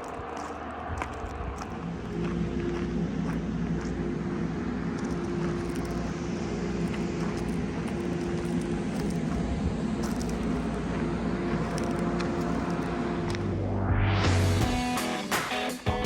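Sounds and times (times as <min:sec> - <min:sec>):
combine harvester engine drone: 0:00.0 - 0:15.3.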